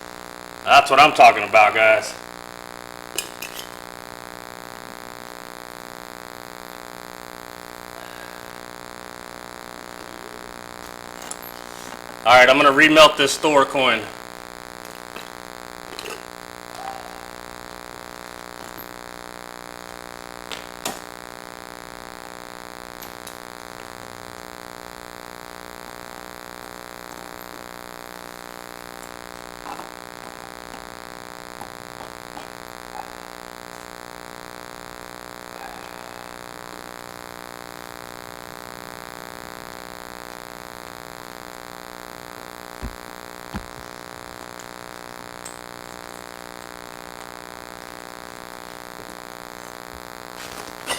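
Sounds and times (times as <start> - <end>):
electronic buzzing hum: 0.0 - 50.9.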